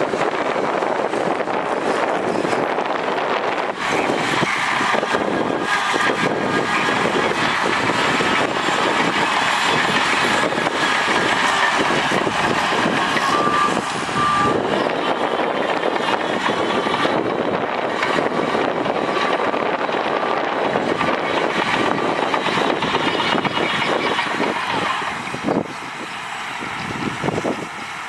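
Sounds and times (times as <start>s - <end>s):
heavy diesel machinery running: 0.0s - 28.0s
reversing alarm beeps: 12.7s - 15.2s.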